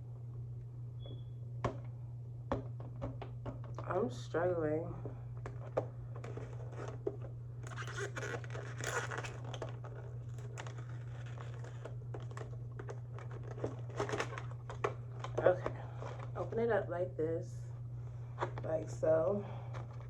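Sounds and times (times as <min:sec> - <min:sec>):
plastic packaging crinkling and tearing: 0:05.5 - 0:16.6.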